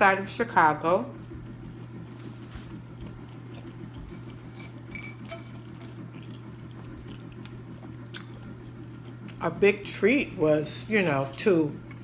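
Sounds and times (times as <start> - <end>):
steady low hum: 0.0 - 12.0
utensils clinking on plate: 4.6 - 5.6.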